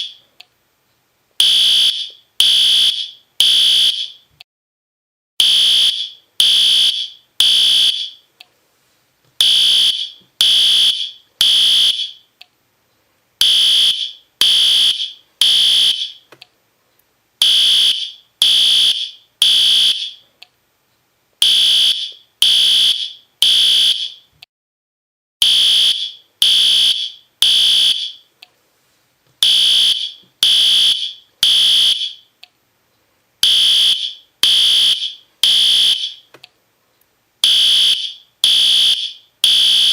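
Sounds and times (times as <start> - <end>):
fire alarm horn blasts: 1.4 - 4.2, 5.4 - 8.2, 9.4 - 12.3, 13.4 - 16.2, 17.4 - 20.2, 21.4 - 24.3, 25.4 - 28.3, 29.4 - 32.3, 33.4 - 36.3, 37.4 - 39.9.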